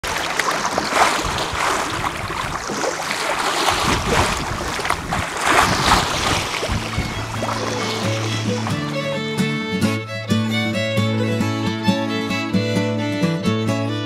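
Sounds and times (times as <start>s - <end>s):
wind buffeting microphone: 0.0s - 9.3s
sea waves washing: 0.0s - 11.4s
wind rushing: 0.1s - 9.1s.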